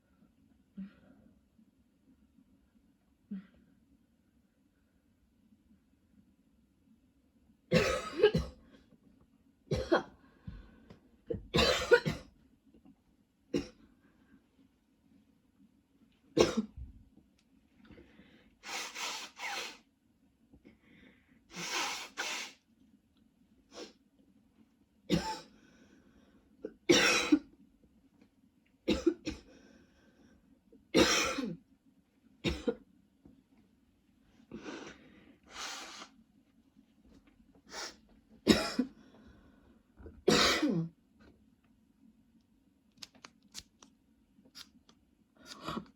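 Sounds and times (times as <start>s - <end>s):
woman coughing: 7.7s - 8.6s, 9.7s - 10.2s, 11.3s - 12.3s, 16.4s - 16.7s, 25.1s - 25.5s, 26.8s - 27.5s, 28.9s - 29.4s, 31.0s - 31.6s, 32.4s - 32.8s, 38.5s - 38.9s, 40.3s - 40.9s.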